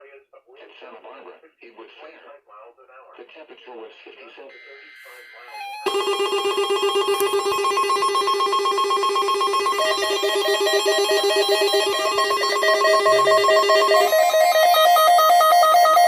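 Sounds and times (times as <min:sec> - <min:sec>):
electronic alert tone trill: 0:04.5 - 0:16.0.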